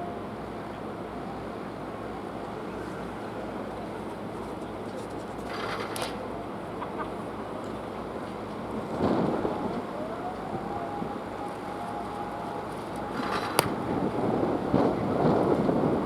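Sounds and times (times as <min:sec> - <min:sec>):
wind rumbling on microphone: 0:07.3 - 0:16.0
sharp crack: 0:12.7 - 0:14.9.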